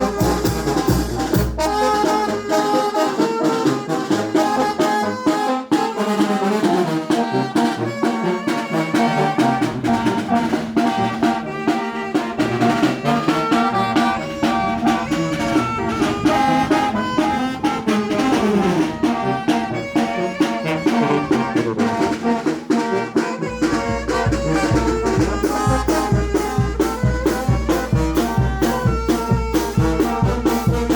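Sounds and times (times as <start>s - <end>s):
brass band playing: 0.0s - 30.9s
heavy low bass beat: 23.4s - 30.9s.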